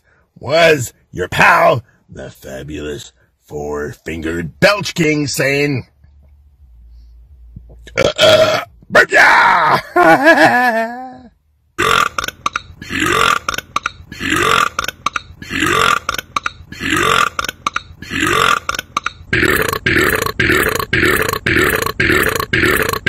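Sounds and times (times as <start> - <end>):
man belching: 7.8 - 8.8, 11.8 - 23.0.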